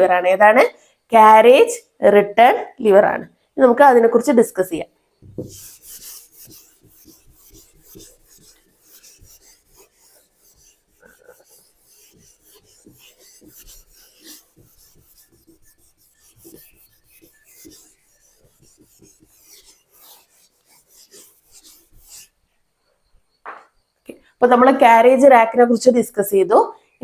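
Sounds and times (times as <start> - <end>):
pen scratching on paper: 5.2 - 22.3.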